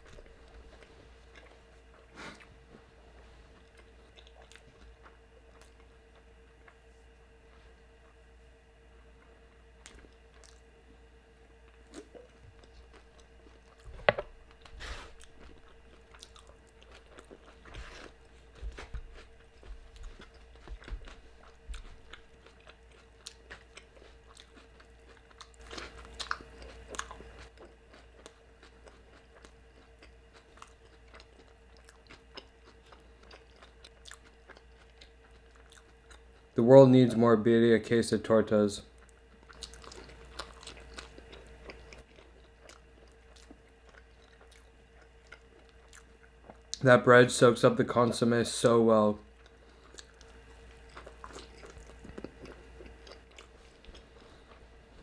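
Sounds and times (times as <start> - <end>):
person chewing food: 0.0 - 8.2, 9.1 - 36.6, 38.9 - 46.8, 49.3 - 55.0
faint steady hum: 0.0 - 55.0
bread crunching: 11.8 - 36.0, 39.4 - 46.6, 49.4 - 55.0.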